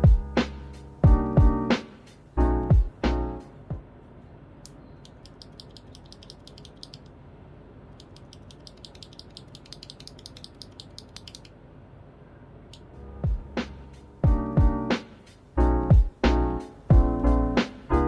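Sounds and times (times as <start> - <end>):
background music: 0.0 - 3.9, 12.8 - 18.0
mechanical keyboard key clacks: 5.0 - 7.1, 8.0 - 11.5.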